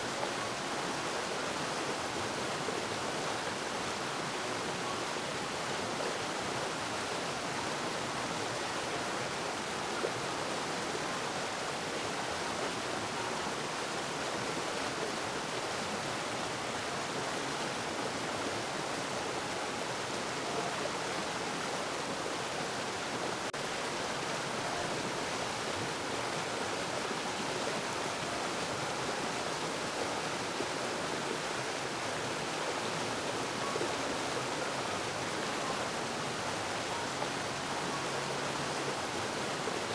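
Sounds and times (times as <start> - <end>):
running water: 0.0 - 39.9.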